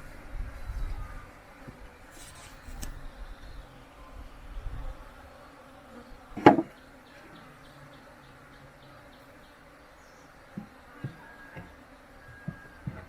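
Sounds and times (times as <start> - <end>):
bees buzzing: 0.0 - 13.0
loud knock: 6.4 - 6.7.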